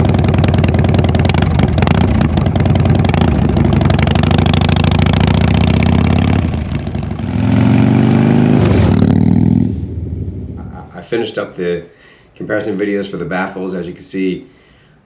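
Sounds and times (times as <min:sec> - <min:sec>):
loud motorcycle engine revving: 0:00.0 - 0:10.6.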